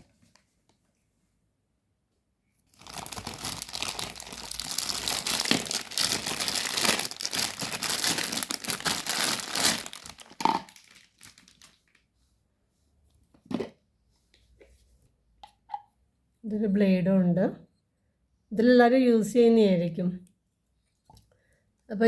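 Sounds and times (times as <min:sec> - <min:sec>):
packaging crinkling and tearing: 0:02.7 - 0:12.0.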